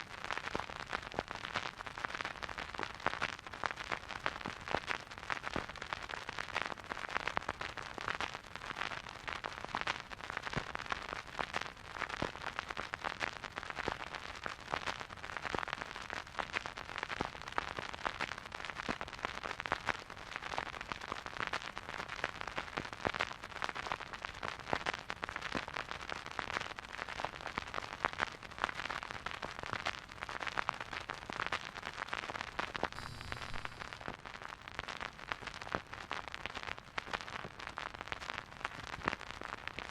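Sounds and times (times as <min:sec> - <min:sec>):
vinyl record crackles and pops: 0:00.0 - 0:39.9
soft steady hiss: 0:32.9 - 0:34.2.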